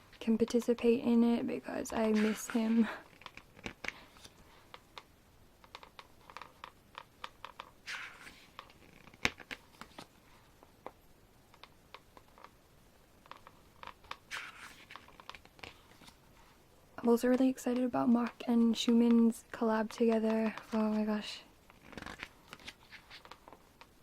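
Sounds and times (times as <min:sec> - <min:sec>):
glossy pages turning: 0:02.0 - 0:04.8, 0:05.6 - 0:10.2, 0:13.2 - 0:16.2, 0:21.7 - 0:24.0
paper rustling: 0:02.0 - 0:04.8, 0:07.5 - 0:10.5, 0:13.2 - 0:16.5, 0:19.8 - 0:23.9.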